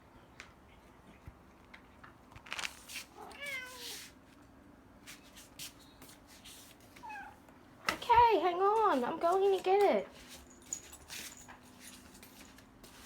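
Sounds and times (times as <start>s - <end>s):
soft clicks and rustles: 0.3s - 3.4s
cat meowing: 3.2s - 4.0s, 7.0s - 7.4s.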